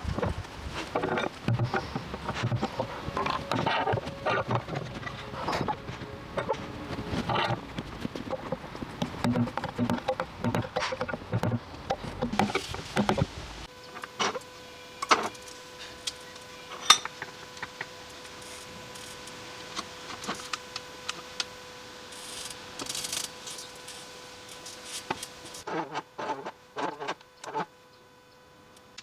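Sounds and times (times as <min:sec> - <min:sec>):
faint steady hum: 0:00.0 - 0:29.0
wood and tools knocking: 0:00.2 - 0:13.6.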